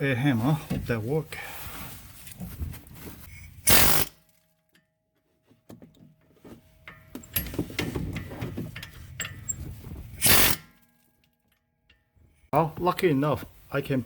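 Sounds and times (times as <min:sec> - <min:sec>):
pneumatic air hammer burst: 0:03.6 - 0:04.2, 0:10.2 - 0:10.7
metal clattering and rattling: 0:06.6 - 0:11.0.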